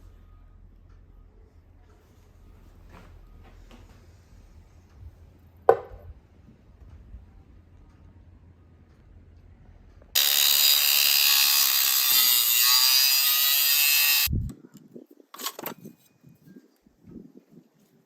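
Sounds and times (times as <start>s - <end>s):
power tool cutting: 10.2s - 14.3s.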